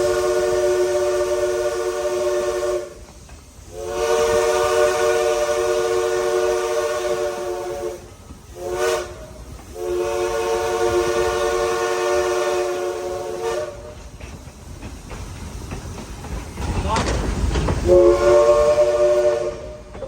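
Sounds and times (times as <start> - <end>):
steam whistle chord: 0.0 - 3.0, 3.7 - 8.0, 8.6 - 14.0, 17.9 - 19.9.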